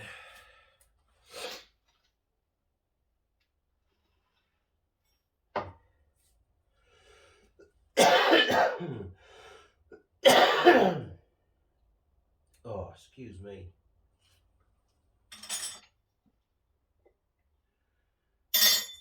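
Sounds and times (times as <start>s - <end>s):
man coughing hard: 8.0s - 9.2s, 10.2s - 11.2s.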